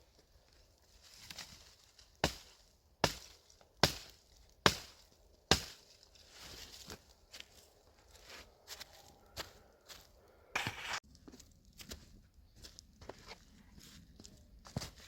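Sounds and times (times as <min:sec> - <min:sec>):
hatchet chopping firewood: 0:02.2 - 0:06.0, 0:10.6 - 0:11.0.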